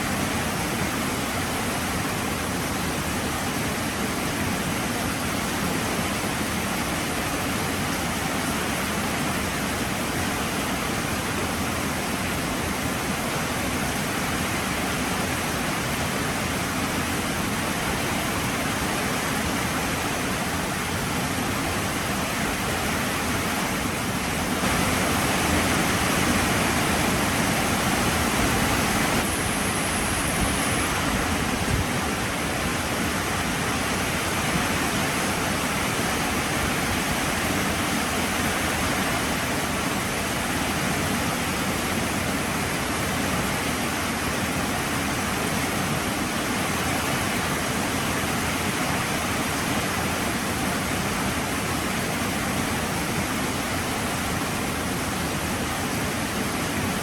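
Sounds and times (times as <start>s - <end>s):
heavy rain falling: 16.4s - 43.5s.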